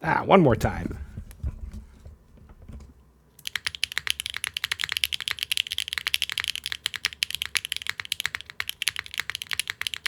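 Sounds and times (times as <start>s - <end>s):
fast mechanical keyboard typing: 3.4s - 10.0s.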